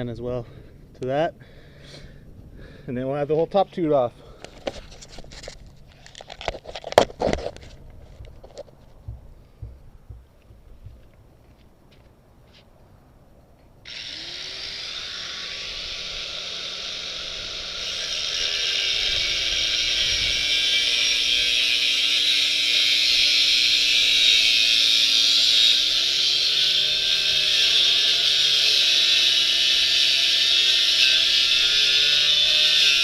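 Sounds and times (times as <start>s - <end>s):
power tool cutting steel tube: 13.9s - 33.0s.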